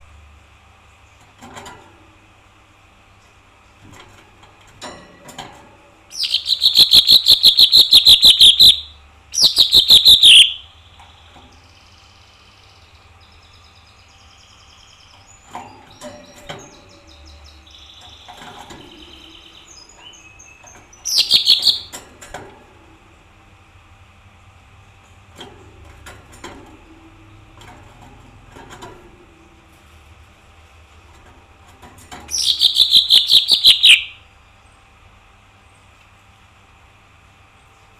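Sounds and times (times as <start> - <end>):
bird chirps and twitters: 6.1 - 22.0, 32.3 - 34.2
songbird rattling song: 6.1 - 22.0, 32.1 - 34.2.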